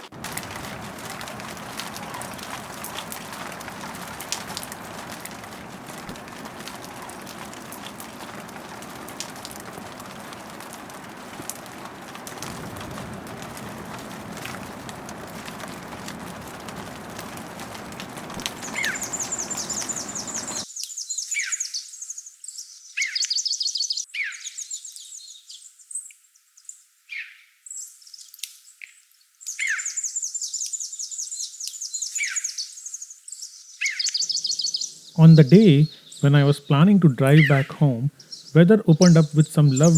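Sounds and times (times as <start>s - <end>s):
songbirds trilling and whistling: 18.4s - 26.1s, 29.4s - 39.9s.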